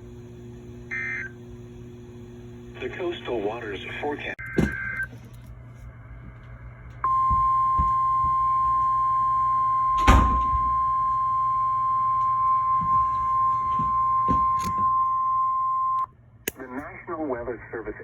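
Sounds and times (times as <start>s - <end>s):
steady alarm tone: 0.0s - 3.6s, 7.0s - 16.0s
radio low hum: 0.0s - 8.5s, 15.6s - 18.0s.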